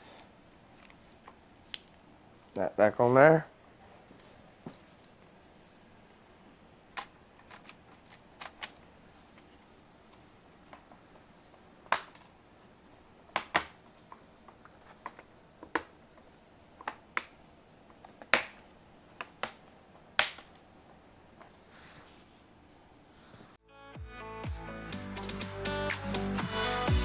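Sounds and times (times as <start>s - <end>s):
clicks of plastic and metal parts: 7.0s - 9.5s, 11.8s - 12.3s, 13.3s - 20.7s.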